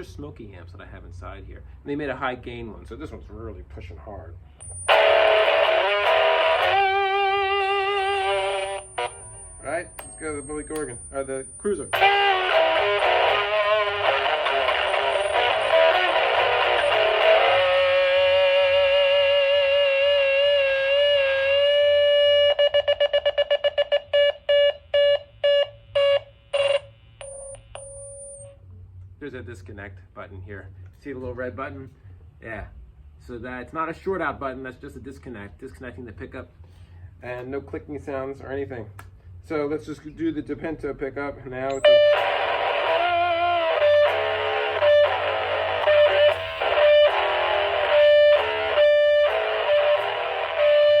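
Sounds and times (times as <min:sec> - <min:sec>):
electric guitar feedback howl: 0:04.6 - 0:23.5, 0:41.7 - 0:51.0.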